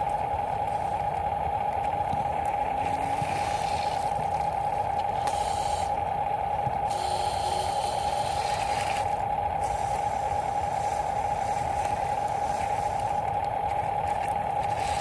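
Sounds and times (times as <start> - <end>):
small electric motor whining: 2.5 - 15.0.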